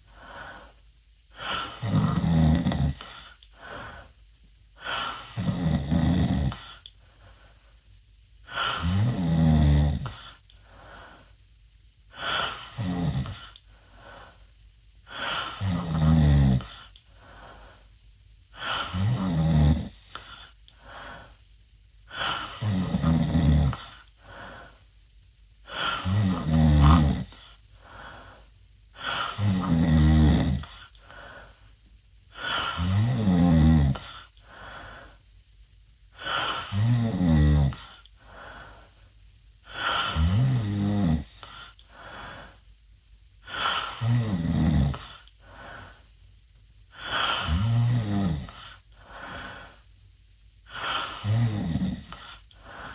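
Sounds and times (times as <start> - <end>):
quiet breathing: 0.0 - 52.9
boy snoring loudly: 1.4 - 3.2, 4.8 - 6.7, 8.5 - 10.2, 12.2 - 13.5, 15.1 - 16.8, 18.6 - 20.4, 22.1 - 24.0, 25.7 - 27.4, 29.0 - 30.9, 32.4 - 34.3, 36.2 - 38.0, 39.7 - 41.7, 43.4 - 45.2, 47.0 - 48.8, 50.7 - 52.4.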